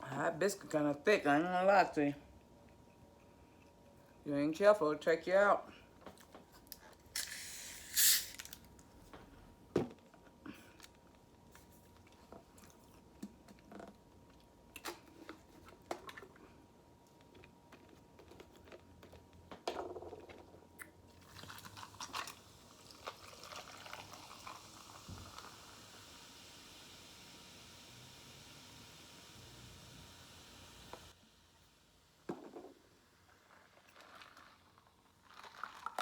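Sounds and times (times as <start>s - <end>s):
brief hissing burst: 7.2s - 8.4s.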